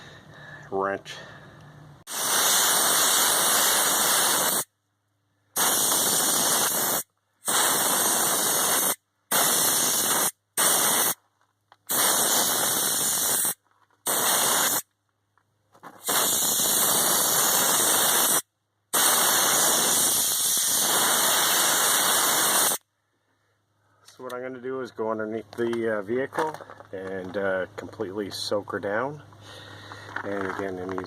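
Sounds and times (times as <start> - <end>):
air spray gun hissing bursts: 2.1 - 4.7, 5.6 - 11.2, 11.9 - 14.8, 16.0 - 22.8.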